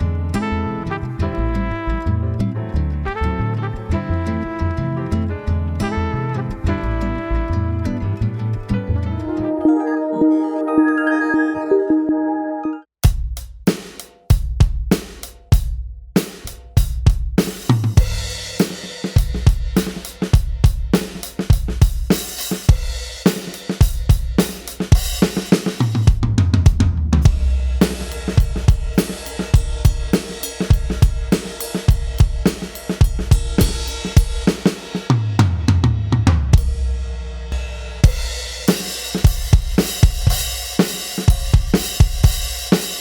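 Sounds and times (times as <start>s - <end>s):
background music: 9.1s - 12.9s
drum beat with cymbals and hi-hat: 13.0s - 43.0s.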